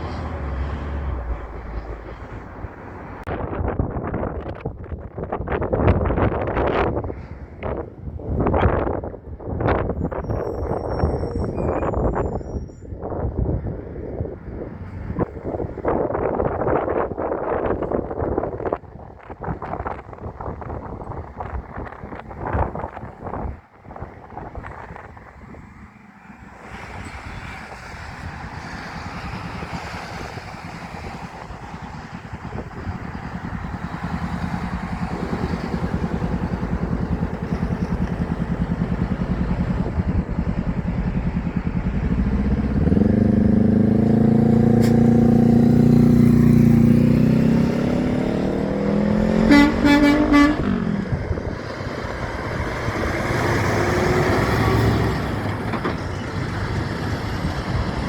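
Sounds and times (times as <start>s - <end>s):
heavy truck diesel engine passing: 0.0s - 3.3s, 5.5s - 18.3s, 20.2s - 58.0s
road traffic noise: 0.0s - 58.0s
air horn blasts: 49.2s - 51.2s.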